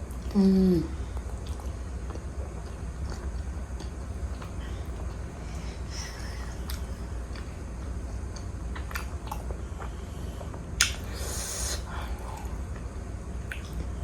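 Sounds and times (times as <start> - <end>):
steady low hum: 0.0 - 14.0
chewing mouth sounds: 1.2 - 5.3, 13.5 - 13.9
lip smack: 10.8 - 11.7, 13.5 - 13.8
hissing suck: 11.1 - 12.0.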